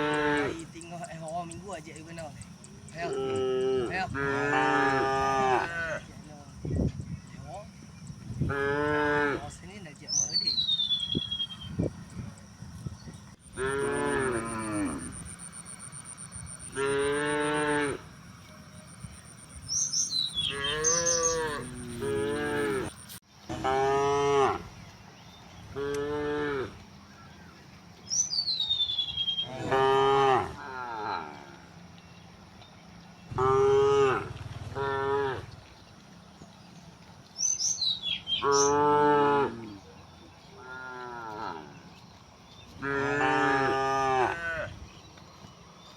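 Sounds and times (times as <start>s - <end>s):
cows mooing: 0.0s - 1.0s, 2.9s - 6.1s, 8.4s - 9.6s, 13.5s - 18.1s, 20.1s - 24.7s, 25.7s - 26.8s, 29.4s - 31.8s, 33.3s - 35.7s, 38.4s - 39.8s, 40.5s - 41.8s, 42.8s - 44.8s.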